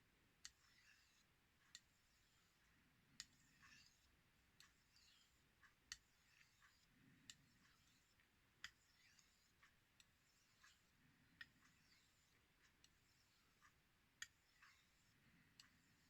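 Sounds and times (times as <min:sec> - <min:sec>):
knife strokes on whetstone: 0:00.6 - 0:01.3, 0:03.3 - 0:04.1, 0:04.7 - 0:05.4, 0:06.0 - 0:09.6, 0:11.7 - 0:13.6, 0:14.3 - 0:16.0.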